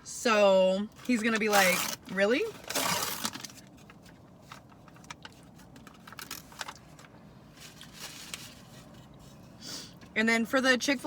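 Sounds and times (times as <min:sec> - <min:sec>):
faint car interior noise: 0:00.0 - 0:11.0
food packaging crinkling: 0:01.4 - 0:09.1.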